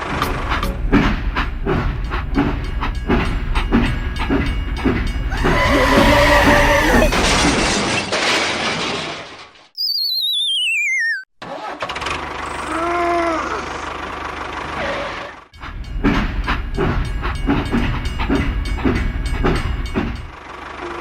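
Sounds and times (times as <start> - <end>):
rhythmic low chugging: 0.0 - 7.2, 15.6 - 20.4
falling wavering whistle: 9.8 - 11.3.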